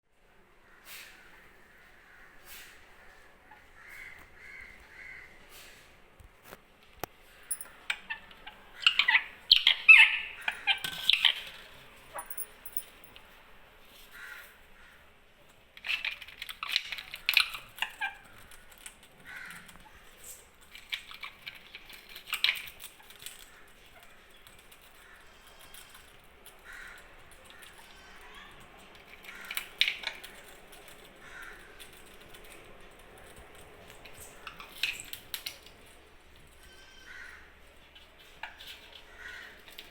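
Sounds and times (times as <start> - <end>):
parrots squawking: 7.9 - 12.4, 16.0 - 18.5.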